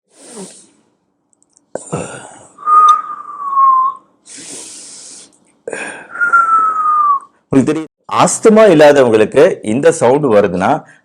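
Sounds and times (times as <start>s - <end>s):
person breathing with a wheeze: 0.1s - 0.8s, 4.2s - 6.4s.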